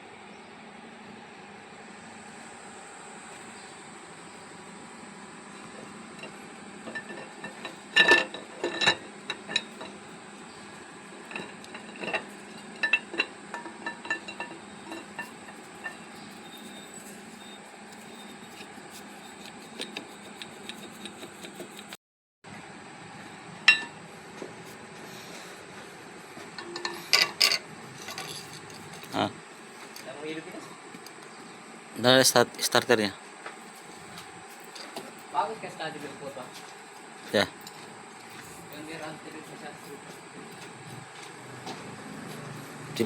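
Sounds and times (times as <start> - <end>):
background hum: 0.0 - 43.0
metal tools clinking: 26.6 - 29.2.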